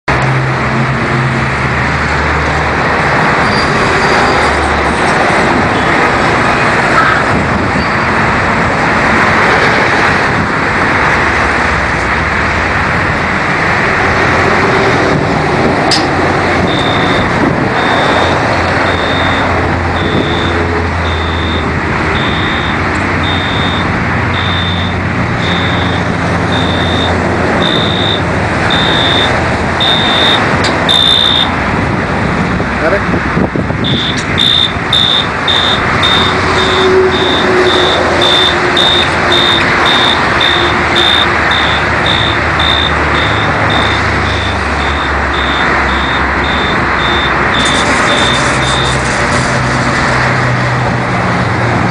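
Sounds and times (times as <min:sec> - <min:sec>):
loud machinery noise: 0:00.1 - 0:51.9
high electronic beep: 0:16.6 - 0:31.5, 0:33.8 - 0:49.0.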